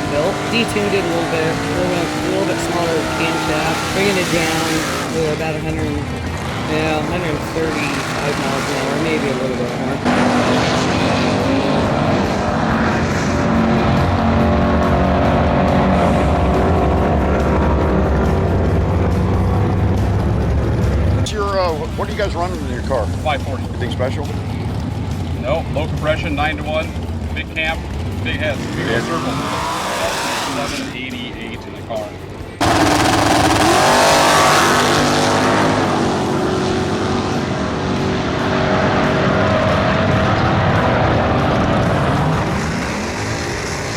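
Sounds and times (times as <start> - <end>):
car engine running loudly: 0.0 - 43.9.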